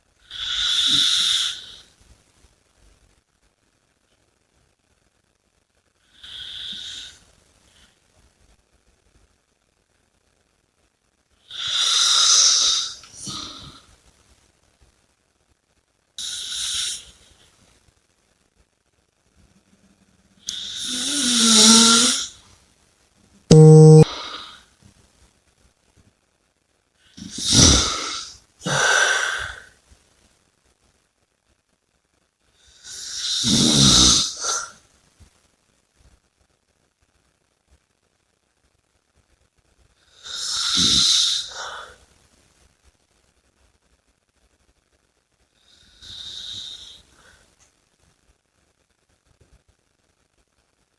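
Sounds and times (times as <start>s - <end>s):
hissing breath: 0.3s - 1.8s, 20.5s - 22.3s, 27.2s - 29.7s, 32.8s - 34.7s, 40.1s - 42.0s
person snoring: 0.3s - 1.8s, 20.5s - 22.3s, 23.5s - 24.4s, 27.2s - 29.6s, 32.9s - 34.7s, 40.2s - 41.9s.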